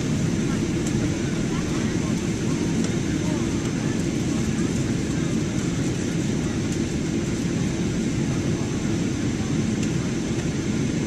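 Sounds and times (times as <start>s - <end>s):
jet engines and airflow: 0.0s - 11.0s.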